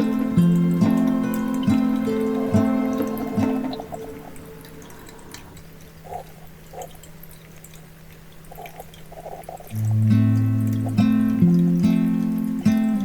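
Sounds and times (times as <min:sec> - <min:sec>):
soft acoustic guitar music: 0:00.0 - 0:05.2, 0:09.7 - 0:13.0
faint steady hum: 0:00.0 - 0:13.0
soft drip-like plops: 0:00.0 - 0:13.0.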